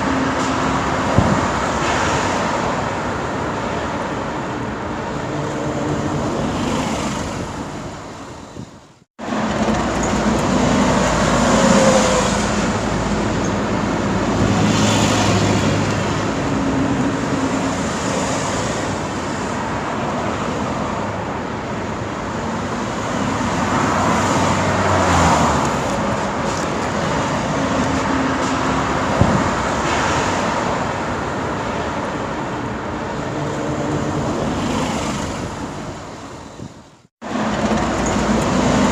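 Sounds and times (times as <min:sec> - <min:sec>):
road traffic passing: 0:00.0 - 0:38.9.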